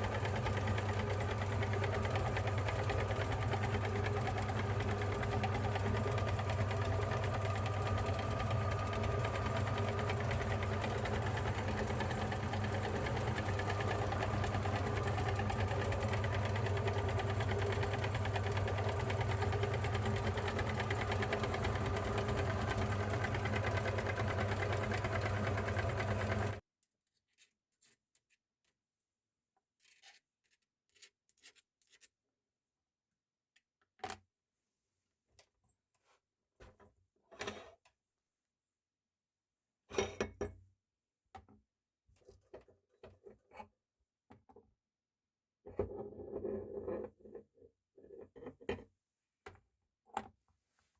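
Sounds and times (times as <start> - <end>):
electric meat grinder motor humming: 0.0 - 26.6.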